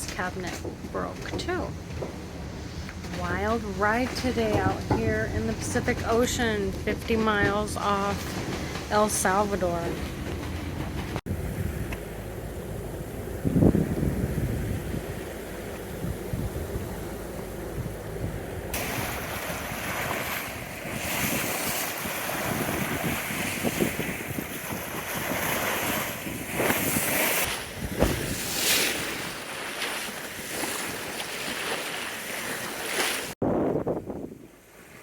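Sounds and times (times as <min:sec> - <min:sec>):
wind buffeting microphone: 0:00.0 - 0:31.8, 0:33.4 - 0:35.0
rough sea rushing: 0:00.0 - 0:35.0
water splashes: 0:13.0 - 0:33.4.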